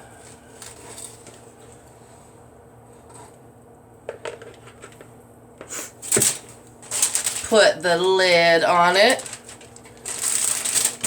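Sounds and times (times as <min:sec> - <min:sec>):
sharp crackle: 0:08.9 - 0:11.0.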